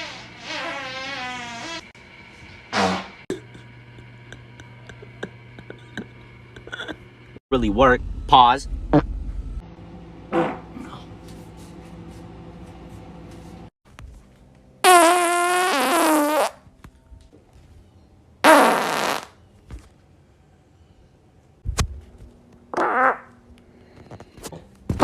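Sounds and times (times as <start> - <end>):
person farting: 0.0 - 1.9, 2.7 - 3.4, 10.3 - 10.7, 14.8 - 16.6, 18.4 - 19.4, 22.7 - 23.4.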